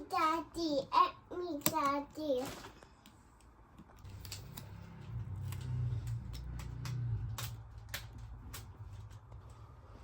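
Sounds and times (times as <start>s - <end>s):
toy kitchen pieces clicking: 1.4s - 2.8s.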